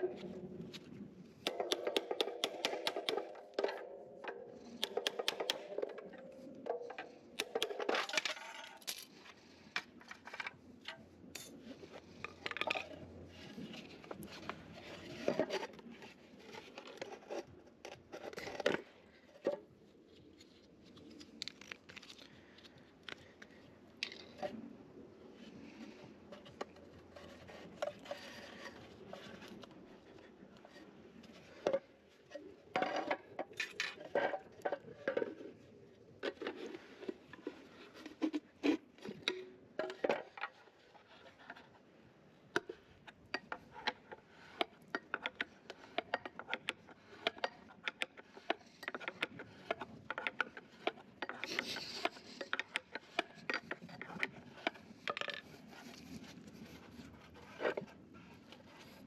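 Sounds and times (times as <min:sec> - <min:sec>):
hand tools clicking and scraping: 0:00.1 - 0:19.2, 0:42.5 - 0:59.0.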